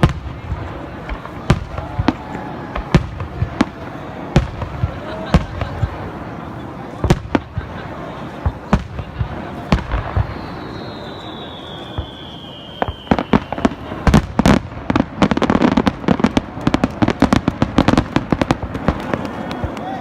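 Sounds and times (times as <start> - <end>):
fireworks bangs: 0.0 - 20.0
firework whistle sliding down: 10.1 - 13.9.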